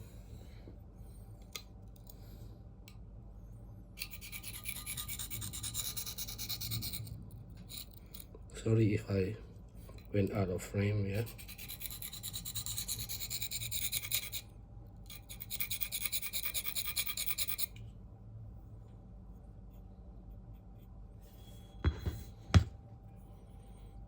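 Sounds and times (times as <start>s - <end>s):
sharp knocks: 21.8s - 22.8s.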